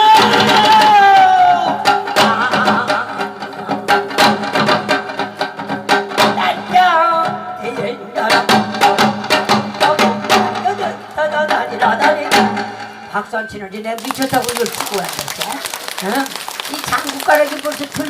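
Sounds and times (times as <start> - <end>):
drum in quick steady rhythm: 1.6 - 6.8, 14.0 - 18.0.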